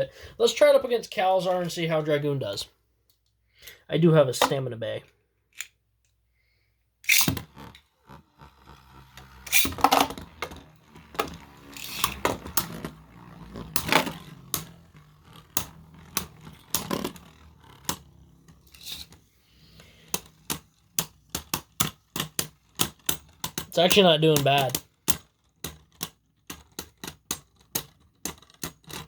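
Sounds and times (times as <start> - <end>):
spinning top launcher snap: 7.0 - 19.2
spinning tops clacking and scraping: 7.0 - 29.0
spinning tops whirring: 7.0 - 29.0
rapid clicks: 7.1 - 19.1.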